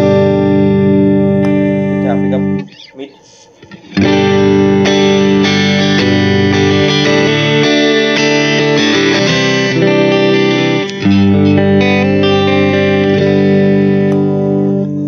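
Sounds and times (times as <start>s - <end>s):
electric guitar chords and notes: 0.0s - 15.0s.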